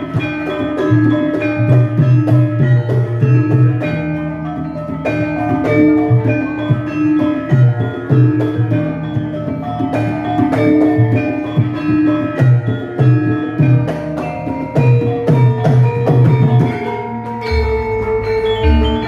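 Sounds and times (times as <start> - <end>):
metallophones and gongs ringing: 0.0 - 19.0
deep low beats: 17.5 - 19.0.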